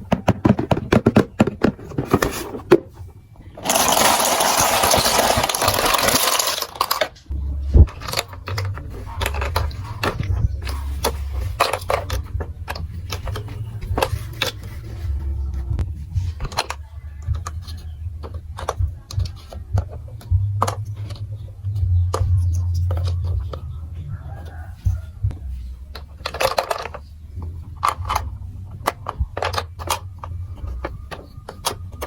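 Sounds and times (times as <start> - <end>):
plastic pieces clicking and clattering: 3.5 - 15.0, 16.3 - 21.4, 25.9 - 32.0
low rumble: 7.2 - 26.0.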